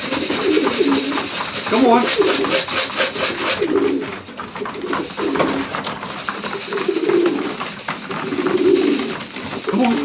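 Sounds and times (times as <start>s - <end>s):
pigeons cooing: 0.0s - 10.0s.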